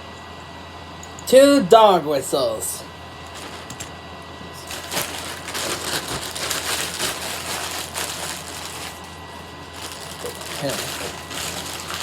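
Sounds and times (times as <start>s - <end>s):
packaging crinkling and rustling: 3.3s - 12.0s.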